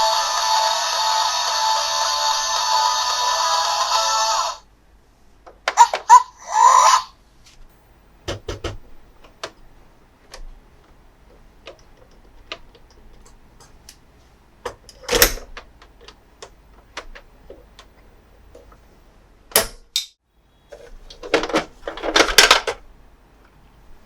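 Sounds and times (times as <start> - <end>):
rattling knock: 8.3 - 8.8.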